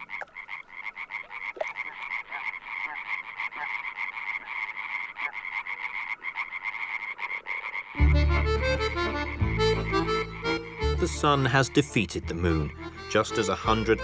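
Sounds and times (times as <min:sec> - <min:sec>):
chorus of toads trilling: 0:00.0 - 0:11.0.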